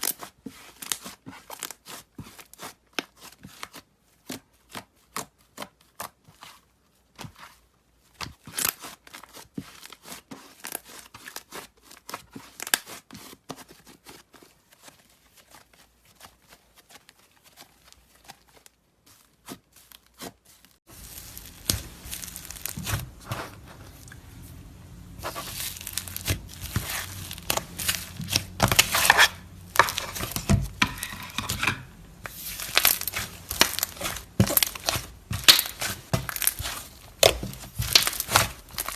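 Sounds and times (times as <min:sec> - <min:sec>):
crunchy slime crackling: 0:14.8 - 0:38.9.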